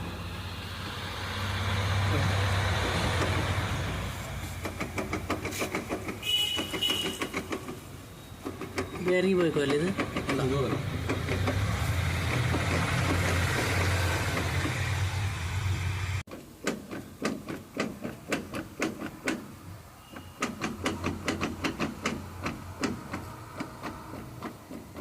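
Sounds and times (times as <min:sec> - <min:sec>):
sharp uneven clicks and knocks: 0:04.4 - 0:15.1, 0:16.3 - 0:25.0.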